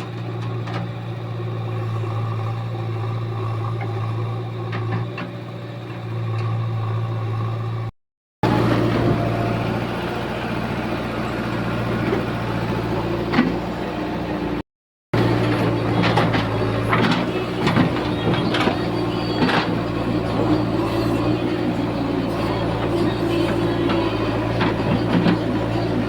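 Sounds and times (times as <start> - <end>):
low motor hum: 0.0 - 14.6, 15.2 - 26.0.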